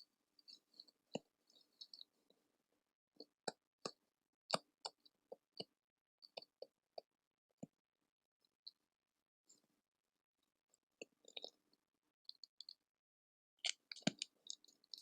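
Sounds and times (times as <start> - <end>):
sparse crackling clicks and pops: 13.6 - 15.0.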